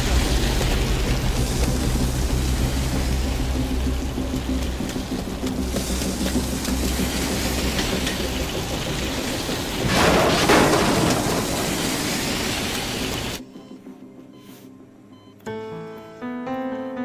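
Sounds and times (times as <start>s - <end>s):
fire roaring under high-pressure hoses: 0.0s - 13.4s.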